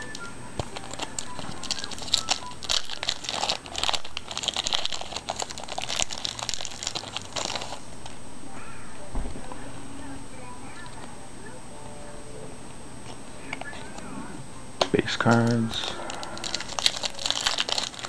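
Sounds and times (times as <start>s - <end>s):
foil wrapper crinkling and tearing: 0.6s - 8.2s, 15.2s - 18.0s.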